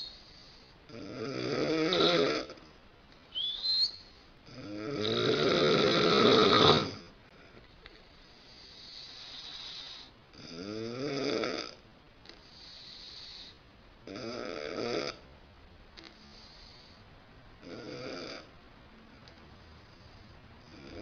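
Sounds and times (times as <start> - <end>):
hissy breath: 0.0 - 0.8, 7.3 - 10.2, 12.4 - 13.6, 16.1 - 17.2
woman snoring: 0.9 - 2.6, 4.5 - 7.1, 9.0 - 11.8, 14.1 - 15.2, 17.6 - 18.5, 20.7 - 21.0
short rising whistle: 3.3 - 4.0.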